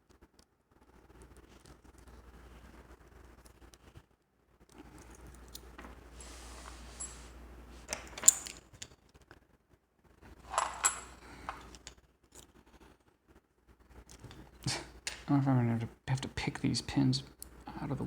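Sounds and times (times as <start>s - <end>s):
lock pick clicking and scraping: 7.9s - 8.7s.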